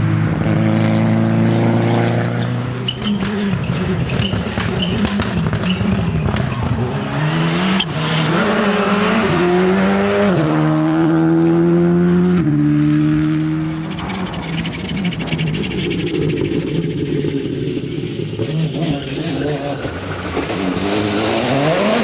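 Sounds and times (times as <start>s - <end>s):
car engine revving at full throttle: 0.0s - 22.0s
exhaust crackles: 2.4s - 11.0s, 13.3s - 22.0s.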